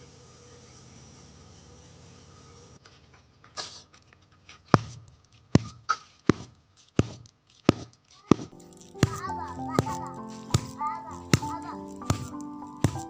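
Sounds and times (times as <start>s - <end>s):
rustling and scraping: 2.8s - 13.0s
sharp knocks or slaps: 4.8s - 5.0s, 5.6s - 13.0s.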